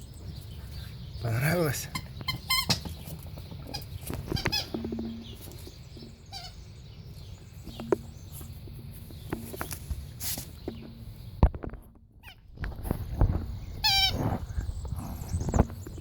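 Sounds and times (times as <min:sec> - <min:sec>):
squeaky dog toy squeaking: 0:01.9 - 0:02.9, 0:03.7 - 0:04.8, 0:06.3 - 0:06.6, 0:12.2 - 0:12.5, 0:13.8 - 0:14.2.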